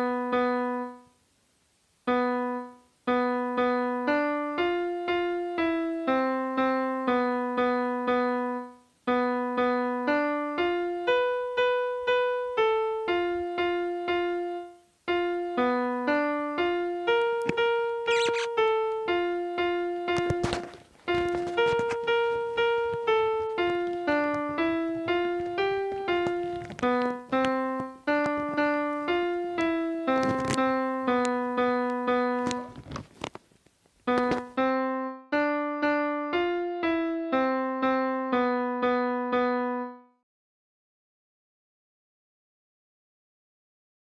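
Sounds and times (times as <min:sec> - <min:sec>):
piano melody: 0:00.0 - 0:01.1, 0:02.1 - 0:32.8, 0:34.1 - 0:40.2.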